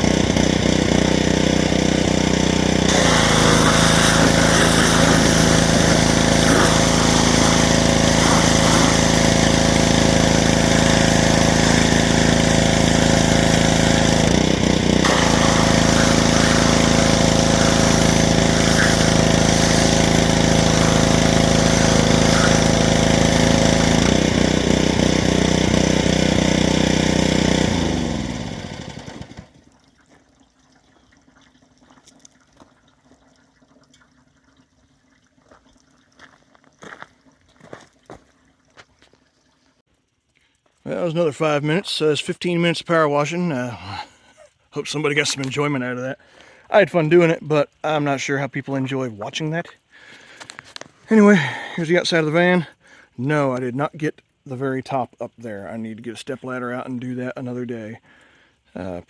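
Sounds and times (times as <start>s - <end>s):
pressure washer engine running: 0.0s - 29.6s.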